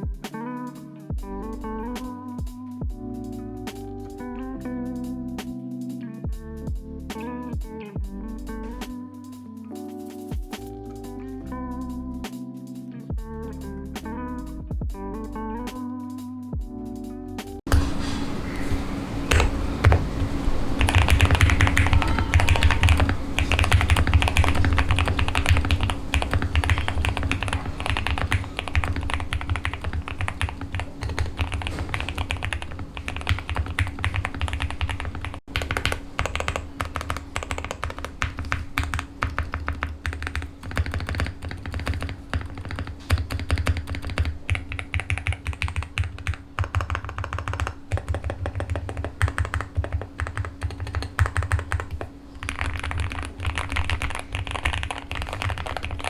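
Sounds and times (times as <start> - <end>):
mechanical keyboard typing: 17.7 - 56.0.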